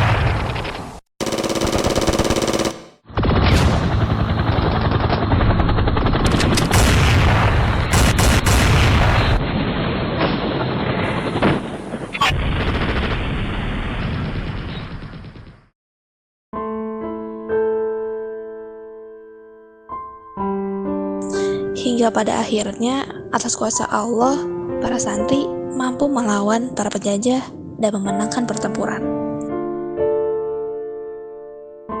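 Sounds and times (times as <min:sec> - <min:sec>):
rapid machine-gun fire: 0:01.2 - 0:09.5, 0:12.2 - 0:13.6.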